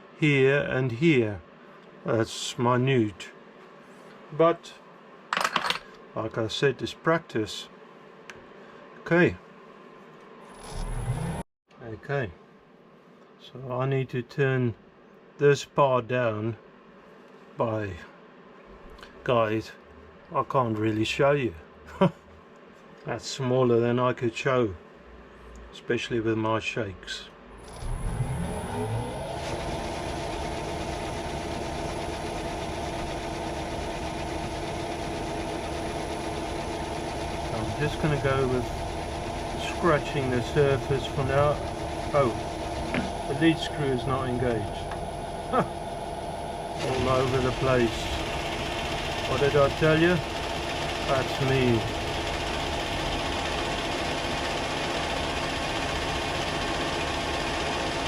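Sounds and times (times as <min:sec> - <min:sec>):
lathe motor whining and humming: 0:27.6 - 0:58.0.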